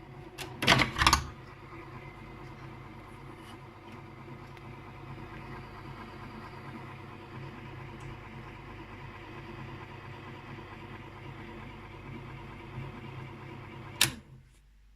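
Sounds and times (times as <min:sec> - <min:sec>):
typewriter electric motor droning: 0:00.2 - 0:14.3.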